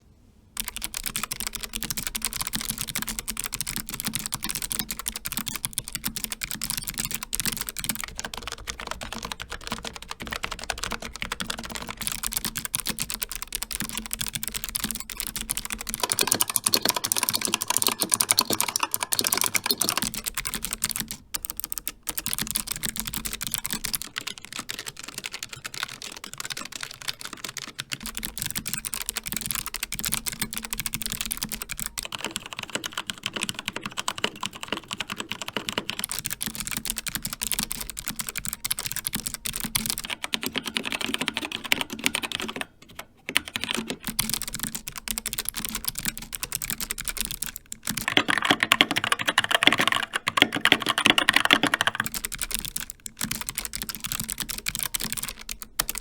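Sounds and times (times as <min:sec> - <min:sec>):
fast typing on mechanical keyboards: 0:00.6 - 0:56.0.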